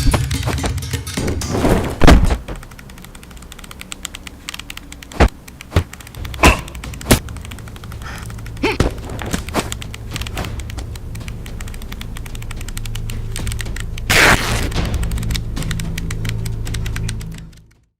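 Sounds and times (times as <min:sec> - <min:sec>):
sharp thuds: 0:00.0 - 0:03.4, 0:05.1 - 0:11.8
heavy thump: 0:00.6 - 0:02.7.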